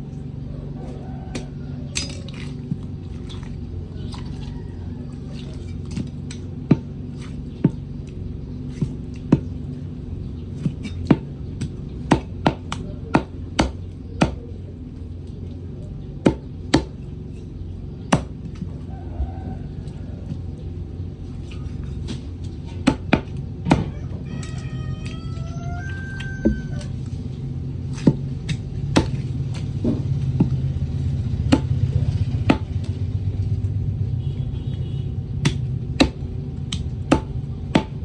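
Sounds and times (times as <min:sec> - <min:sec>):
steady low hum: 0:00.0 - 0:38.0
blade chopping chicken: 0:10.6 - 0:14.5, 0:22.7 - 0:27.0, 0:27.9 - 0:33.0, 0:35.4 - 0:38.0.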